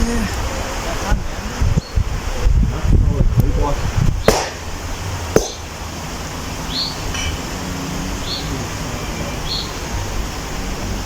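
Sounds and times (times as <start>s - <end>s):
low rush of background noise: 0.0s - 11.0s
bird chirping: 6.6s - 10.0s.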